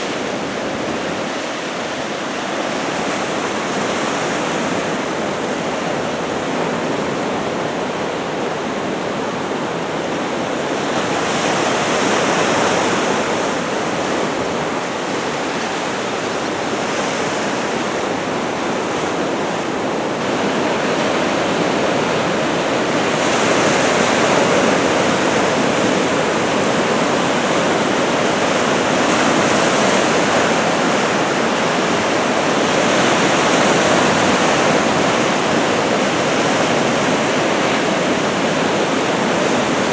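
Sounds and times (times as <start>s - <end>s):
ocean surf crashing: 0.0s - 39.9s.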